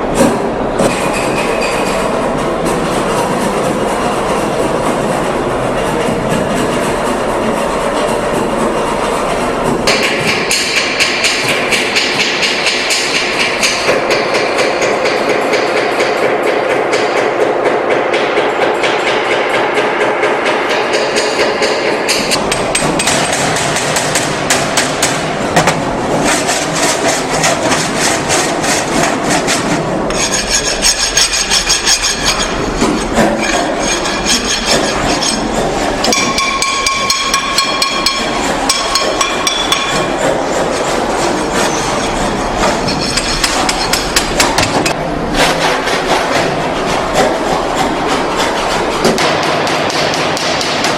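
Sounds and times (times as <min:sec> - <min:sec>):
metal scraping and filing: 0:26.2 - 0:49.7
ringing metal tones: 0:33.4 - 0:40.2.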